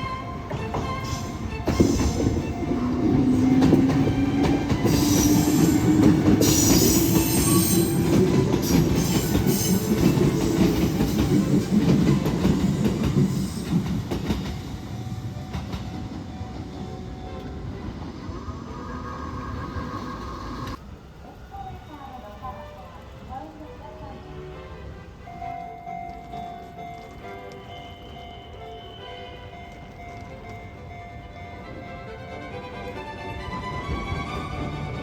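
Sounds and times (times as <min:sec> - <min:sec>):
high squeal: 0:04.9 - 0:09.9, 0:17.5 - 0:20.8.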